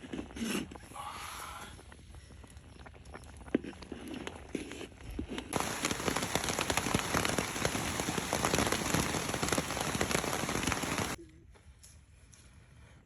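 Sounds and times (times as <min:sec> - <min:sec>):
heavy rain falling: 0:05.6 - 0:11.2.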